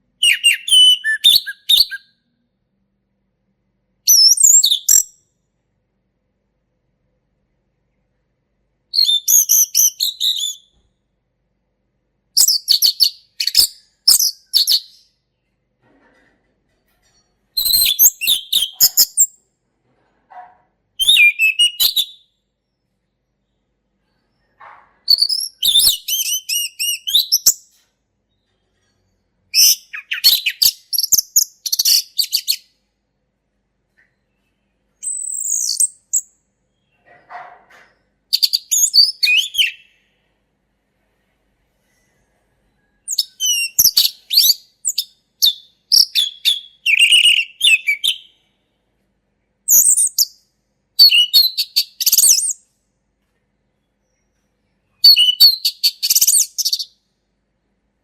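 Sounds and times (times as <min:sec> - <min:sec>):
thrush singing whistles and warbles: 0:00.2 - 0:02.2, 0:38.4 - 0:40.0, 0:43.2 - 0:48.4, 0:51.0 - 0:52.5, 0:55.0 - 0:56.9.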